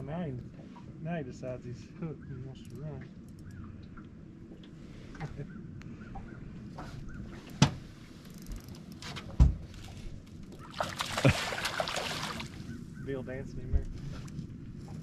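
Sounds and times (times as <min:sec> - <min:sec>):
low steady rumble: 0:00.0 - 0:15.0
fish splashing at surface: 0:10.6 - 0:12.6.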